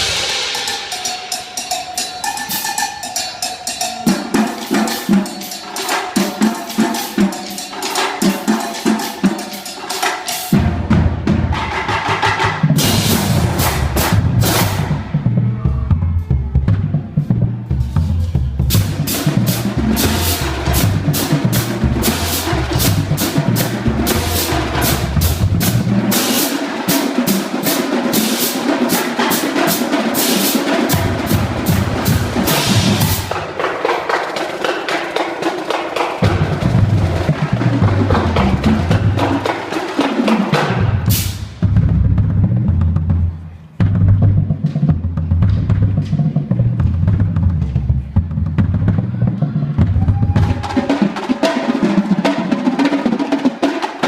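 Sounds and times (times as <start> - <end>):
pitched bass drums: 0.0 - 2.6, 12.5 - 26.4, 30.9 - 33.5, 36.2 - 39.6, 40.6 - 50.9
cymbal crash: 0.0 - 5.9
rapid snare drum strokes: 0.0 - 15.1, 17.8 - 43.1.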